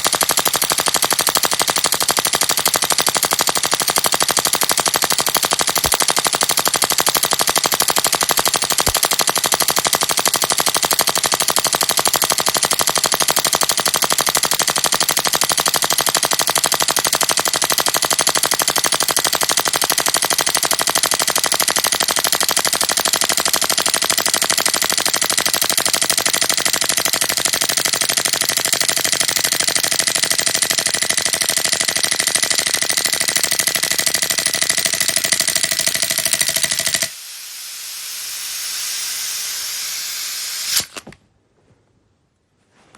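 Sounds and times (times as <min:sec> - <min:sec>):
airsoft pistol slide clattering: 0:40.7 - 0:41.2.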